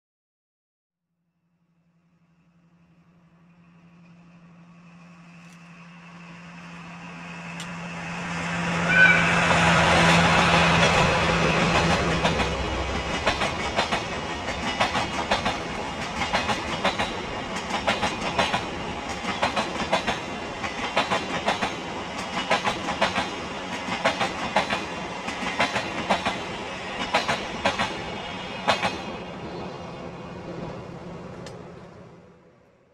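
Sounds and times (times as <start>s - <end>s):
diesel engine drone: 2.6s - 13.3s
train whistle blast: 8.6s - 10.2s
train wheels clickety-clack: 8.9s - 29.7s.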